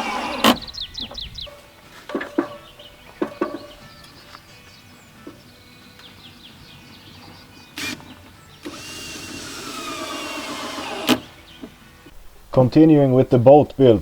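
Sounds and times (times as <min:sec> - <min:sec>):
power drill driving a screw: 0:00.0 - 0:00.7, 0:07.7 - 0:11.4
drill stopping click: 0:07.8 - 0:11.4.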